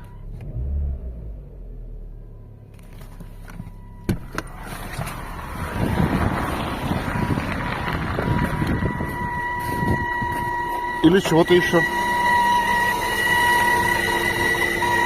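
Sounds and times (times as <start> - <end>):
car engine idling: 0.0 - 15.0
steady high whistle: 8.2 - 15.0.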